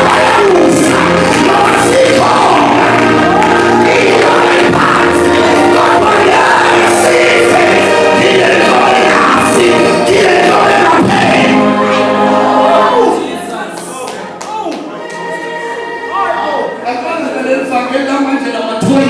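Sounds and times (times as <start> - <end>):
group singing gospel song: 0.0 - 13.8
instrumental accompaniment: 0.0 - 17.5.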